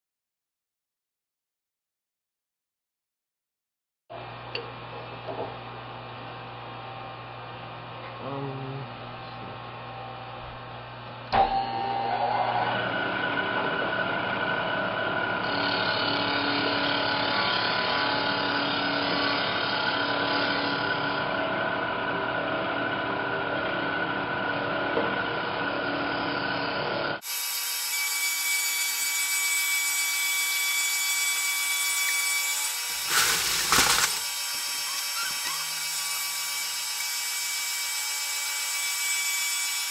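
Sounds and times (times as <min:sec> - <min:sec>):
milling machine cutting wood: 0:11.4 - 0:21.4, 0:27.3 - 0:39.9.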